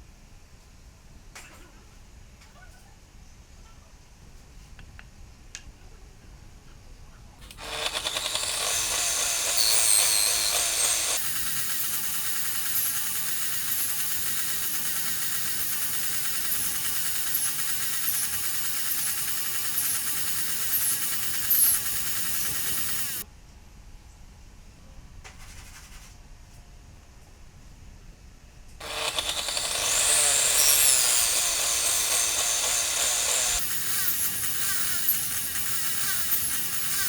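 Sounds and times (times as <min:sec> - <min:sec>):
power tool running: 0:07.4 - 0:23.2, 0:28.8 - 0:37.0.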